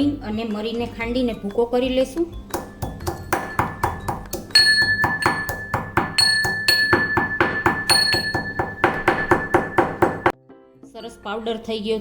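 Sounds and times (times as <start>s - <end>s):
pestle pounding in a mortar: 2.5s - 10.3s.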